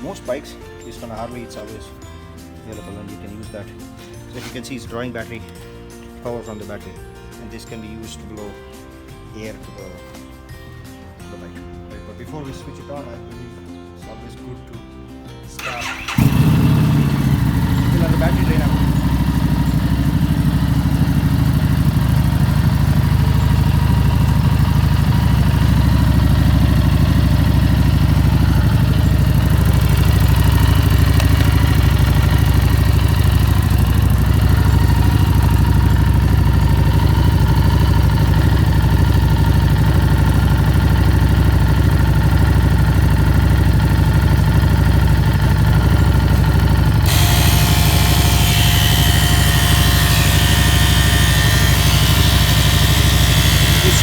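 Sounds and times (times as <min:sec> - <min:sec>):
motorcycle engine idling: 0:15.6 - 0:54.0.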